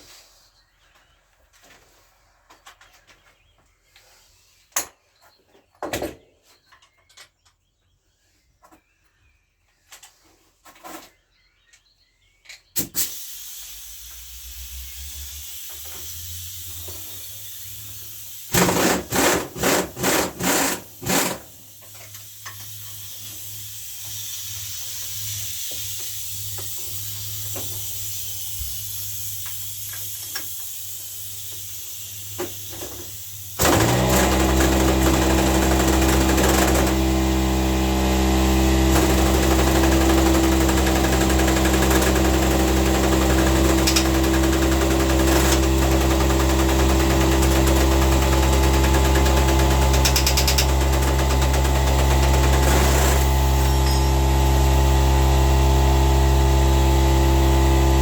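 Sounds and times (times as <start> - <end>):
machine motor humming and hissing: 33.6 - 58.0
hand tools clicking on metal: 39.0 - 54.1.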